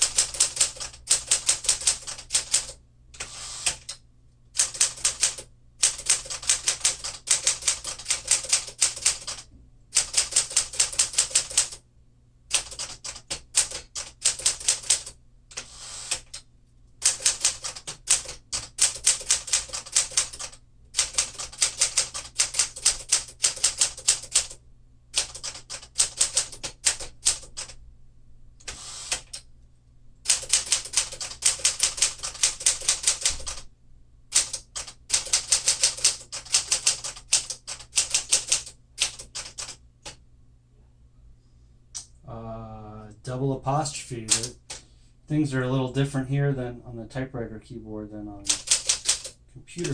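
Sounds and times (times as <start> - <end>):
manual typewriter key strikes: 48.5 - 49.9.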